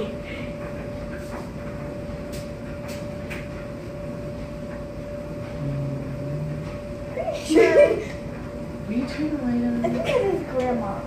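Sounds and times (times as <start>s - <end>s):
mechanical hum with tone: 0.0s - 11.0s
brief low hum: 5.3s - 7.2s.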